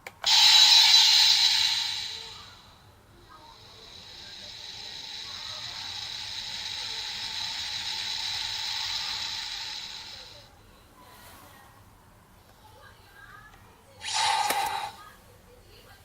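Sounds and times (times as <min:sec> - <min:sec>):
electronic hiss with high tone: 0:00.2 - 0:02.8, 0:03.4 - 0:10.5, 0:14.0 - 0:15.0.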